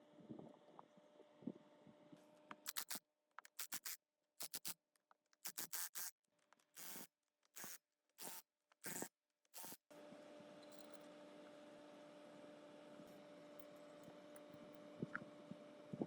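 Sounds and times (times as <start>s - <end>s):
small clicks: 2.5s - 9.8s.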